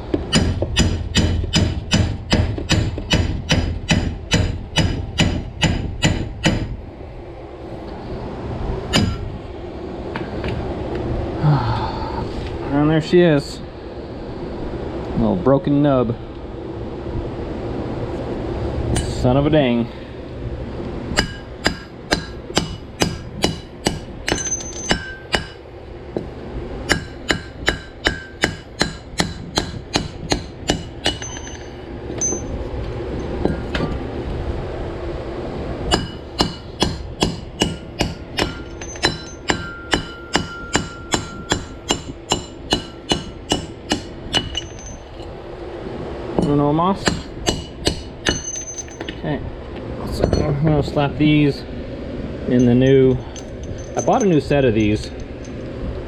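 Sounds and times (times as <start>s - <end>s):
hammer striking steel: 0.3s - 6.8s, 8.9s - 9.3s, 21.2s - 25.6s, 26.9s - 32.6s, 35.9s - 45.2s, 47.0s - 49.2s.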